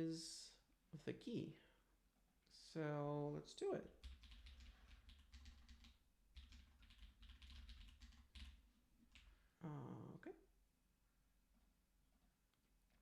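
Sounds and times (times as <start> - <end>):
keyboard typing: 3.9 - 9.3.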